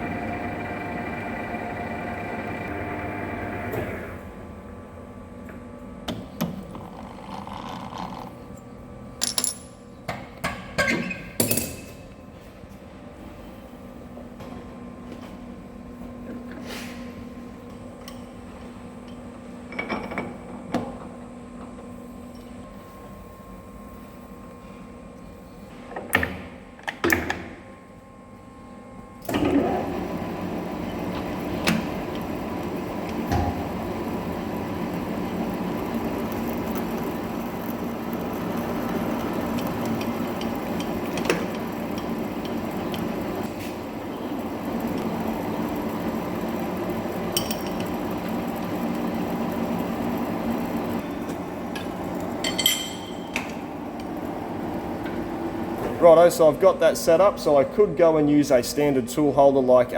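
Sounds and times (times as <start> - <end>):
metal lathe running: 0.0 - 4.2, 29.3 - 55.8.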